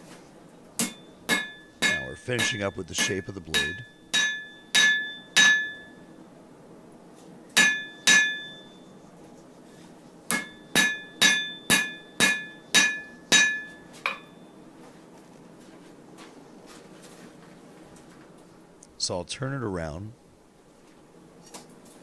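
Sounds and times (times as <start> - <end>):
hammer striking blade on anvil: 7.6 - 8.5, 10.3 - 14.2.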